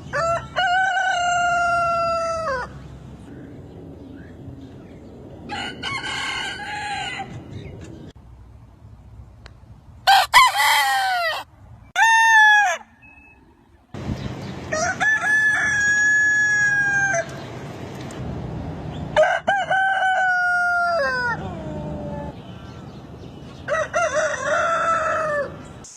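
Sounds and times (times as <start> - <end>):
rooster crowing: 5.5 - 7.4, 10.1 - 12.9, 14.7 - 17.3, 19.2 - 21.6, 23.7 - 25.6.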